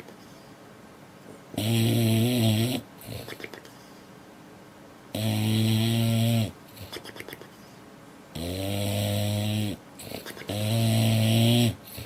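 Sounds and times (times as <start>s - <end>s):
dog snoring: 1.5s - 3.6s, 5.1s - 7.4s, 8.4s - 12.0s.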